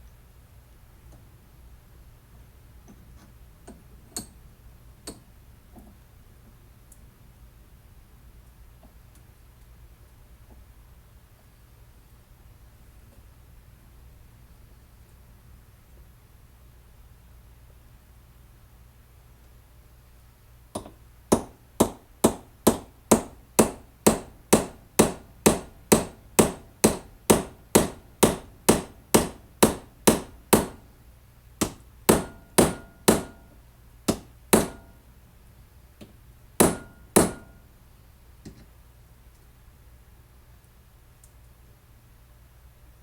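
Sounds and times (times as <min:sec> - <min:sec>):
small hammer striking metal: 0:20.8 - 0:30.8, 0:31.6 - 0:35.0, 0:36.6 - 0:37.6.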